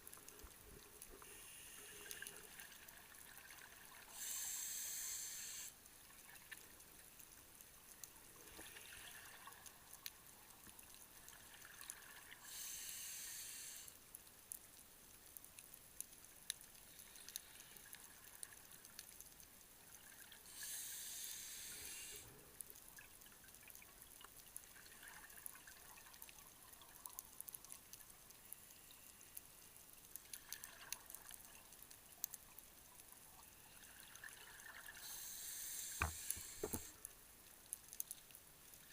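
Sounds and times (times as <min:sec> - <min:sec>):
faint scattered clicks: 0:00.0 - 0:38.9
regulator inhale hisses: 0:01.2 - 0:02.4, 0:04.1 - 0:05.8, 0:12.4 - 0:14.0, 0:20.4 - 0:22.4, 0:35.0 - 0:37.0.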